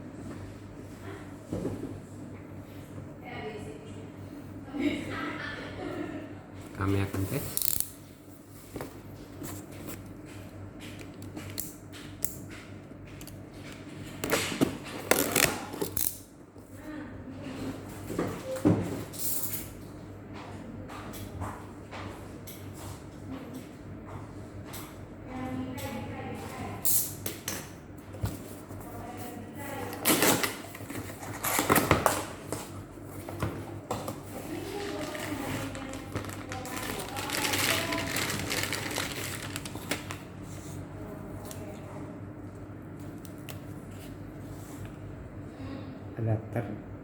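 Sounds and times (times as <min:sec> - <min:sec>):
packaging rustling and knocks: 0:34.5 - 0:40.2.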